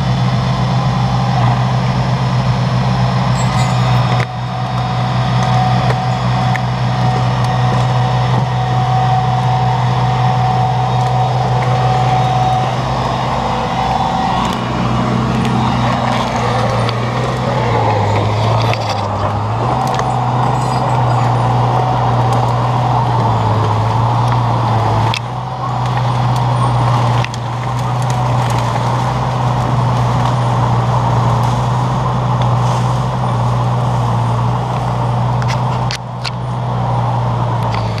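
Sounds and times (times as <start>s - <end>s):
bulldozer diesel engine running: 0.0s - 38.0s.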